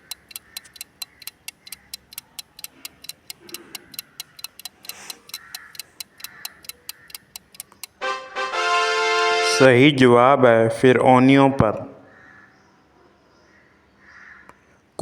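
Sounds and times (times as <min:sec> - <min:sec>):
fast clock ticks: 0:00.0 - 0:08.0.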